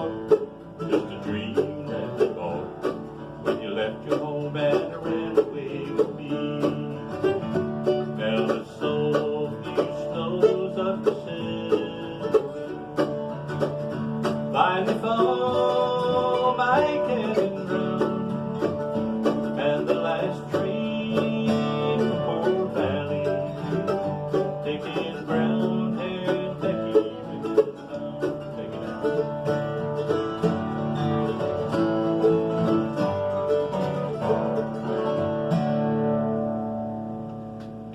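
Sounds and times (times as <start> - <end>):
bluegrass band with banjo and guitar: 0.0 - 37.9.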